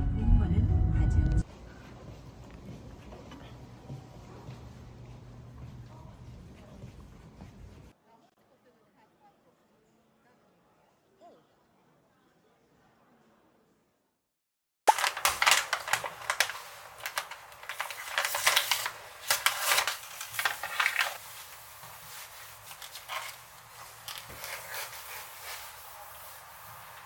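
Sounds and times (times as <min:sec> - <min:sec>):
hard objects clicking and clattering: 0:14.9 - 0:21.2.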